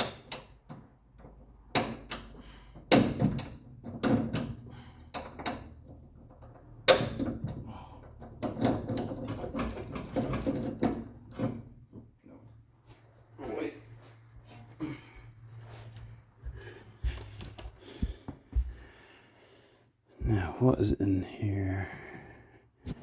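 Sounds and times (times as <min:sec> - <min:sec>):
metal parts and tools clunking: 0:00.0 - 0:12.2, 0:17.1 - 0:18.0.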